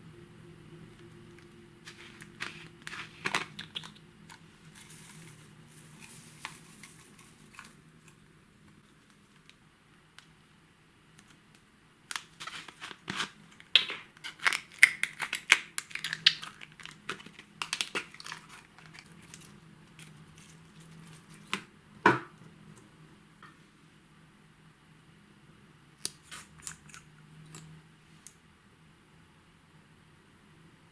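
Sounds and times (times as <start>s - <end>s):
sticky slime crackles and pops: 12.1s - 19.2s.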